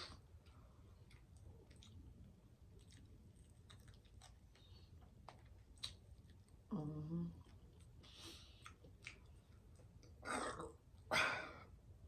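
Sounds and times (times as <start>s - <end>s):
person chewing: 0.0s - 6.6s, 7.4s - 10.2s.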